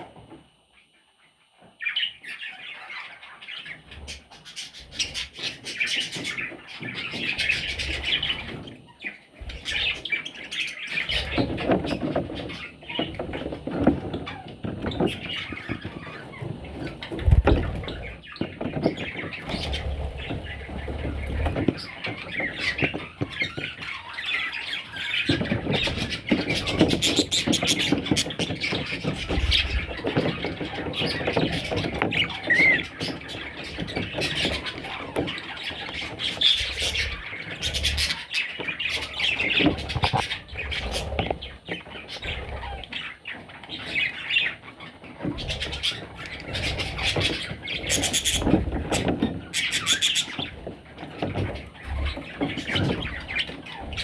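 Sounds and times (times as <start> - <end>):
baby birds chirping and squawking: 1.6 - 54.0
rustling: 10.8 - 54.0.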